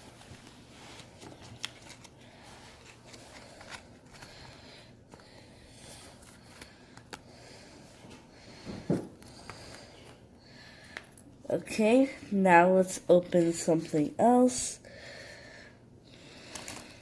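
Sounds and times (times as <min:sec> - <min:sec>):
trading cards rustling: 0:00.0 - 0:07.3.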